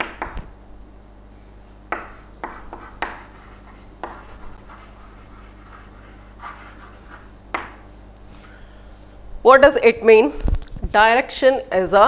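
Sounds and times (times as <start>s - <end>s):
pen tapping: 1.9s - 3.4s, 4.0s - 4.3s, 7.5s - 7.8s
pen scratching on surface: 2.0s - 7.3s.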